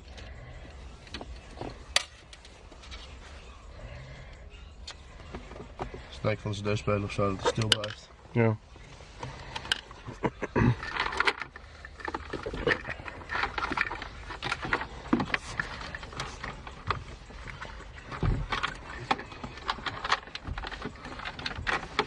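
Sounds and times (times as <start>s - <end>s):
plastic trim clicking and rustling: 7.4s - 8.0s.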